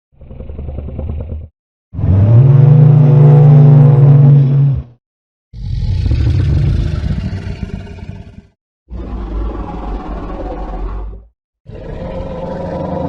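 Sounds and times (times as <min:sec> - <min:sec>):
low dinosaur bellow: 0:05.6 - 0:13.0
rough rumbling creature call: 0:05.6 - 0:13.0.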